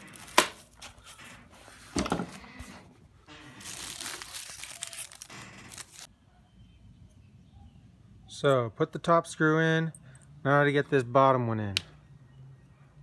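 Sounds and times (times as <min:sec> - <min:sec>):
plastic packaging crinkling: 0:03.5 - 0:06.1.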